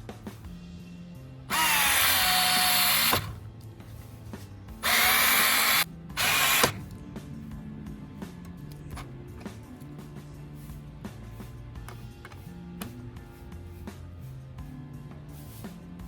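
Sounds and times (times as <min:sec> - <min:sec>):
background music: 0:00.0 - 0:16.0
cordless screwdriver whine: 0:01.5 - 0:03.4, 0:04.8 - 0:06.8.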